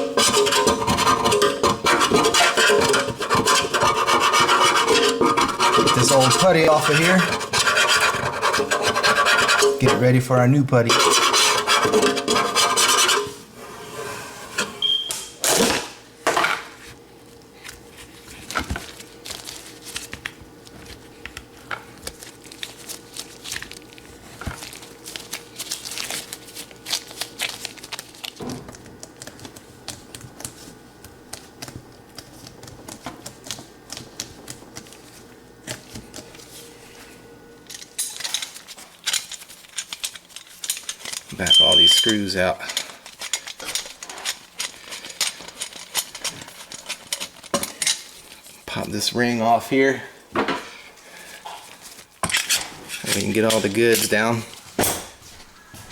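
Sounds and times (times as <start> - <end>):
putty scraping off metal: 0.0 - 10.1, 10.8 - 14.9
short high beep: 14.8 - 15.3, 41.5 - 42.2.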